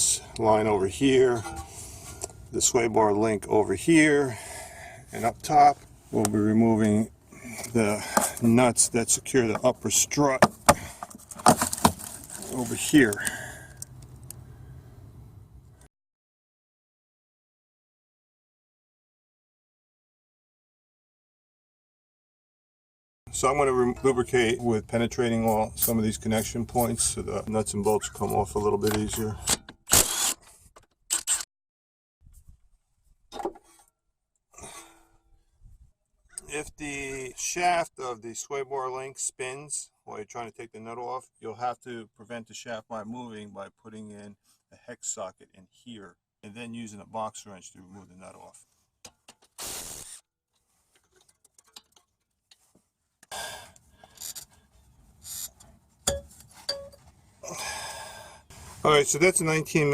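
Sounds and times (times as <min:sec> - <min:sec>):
hand tools scraping metal: 0:01.4 - 0:02.3
faint handling sounds: 0:11.0 - 0:14.4.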